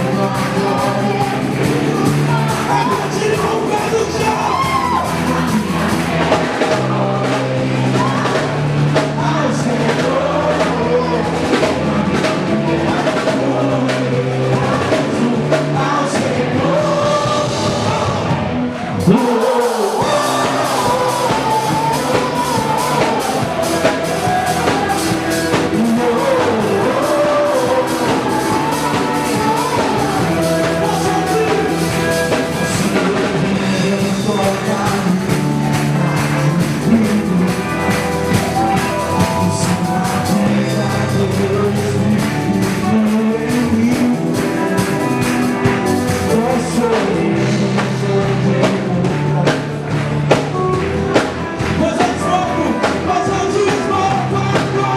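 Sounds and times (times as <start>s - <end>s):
person singing: 0.0s - 54.9s
rock band playing: 0.0s - 54.9s.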